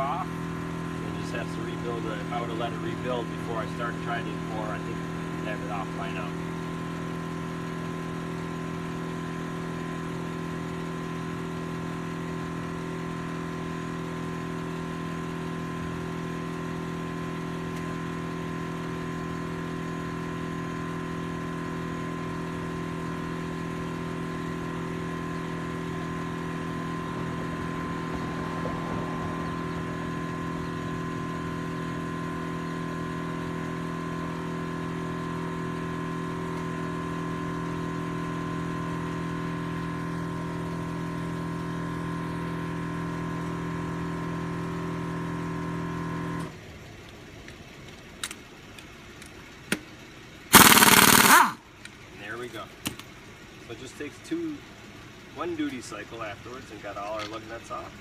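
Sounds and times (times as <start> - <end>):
air compressor humming: 0.0 - 46.9, 49.7 - 58.0.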